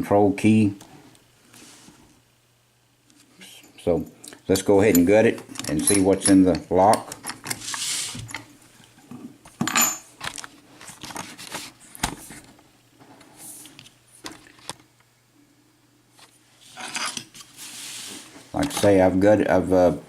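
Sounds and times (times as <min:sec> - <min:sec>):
keys clinking and jingling: 0:05.5 - 0:06.4.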